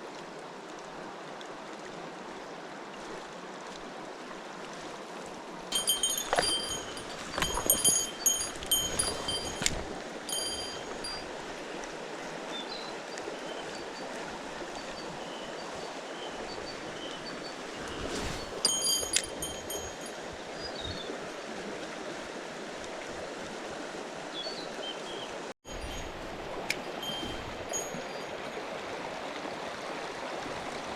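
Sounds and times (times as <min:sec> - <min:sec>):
mountain stream flowing: 0:00.0 - 0:30.9
bright metallic jingling: 0:05.7 - 0:11.4, 0:18.2 - 0:20.2, 0:25.7 - 0:28.6.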